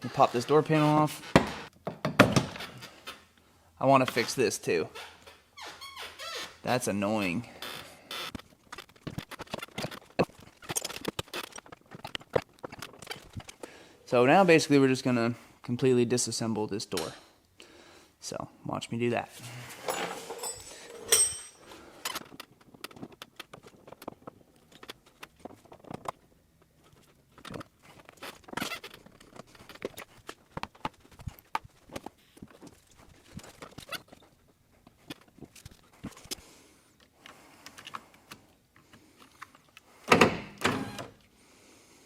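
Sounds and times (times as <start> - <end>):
tools and trim parts clicking: 19.9 - 22.2.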